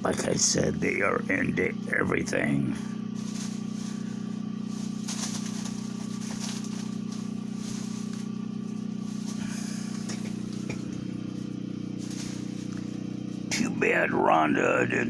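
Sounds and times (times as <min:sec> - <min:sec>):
low electrical hum: 0:00.0 - 0:15.0
faint ticks and rustles: 0:03.1 - 0:13.6.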